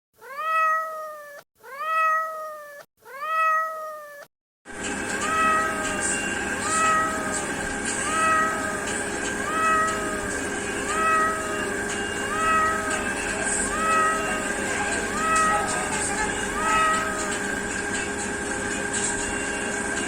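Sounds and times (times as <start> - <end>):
cat meowing: 0.2 - 4.3, 5.1 - 17.6
steady background hum: 4.7 - 20.0.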